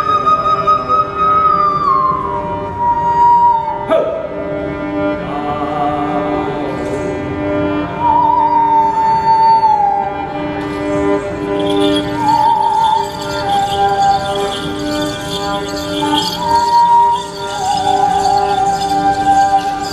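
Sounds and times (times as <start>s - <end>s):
gliding melody with vibrato: 10.3s - 19.9s.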